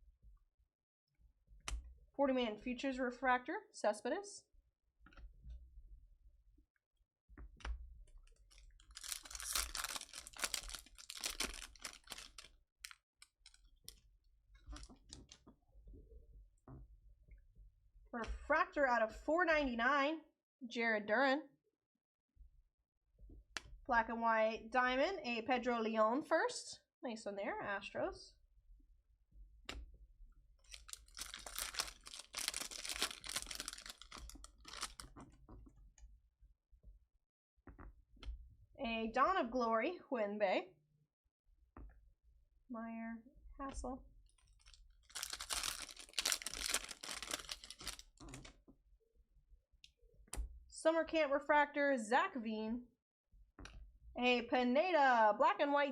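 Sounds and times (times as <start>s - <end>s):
card pack wrapper crinkling: 8.4s - 13.7s, 30.7s - 35.2s, 44.5s - 48.2s.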